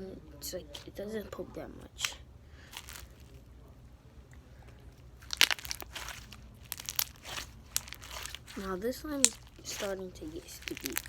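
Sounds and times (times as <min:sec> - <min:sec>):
slime with beads crackling pops: 0:02.0 - 0:03.3, 0:05.2 - 0:11.0.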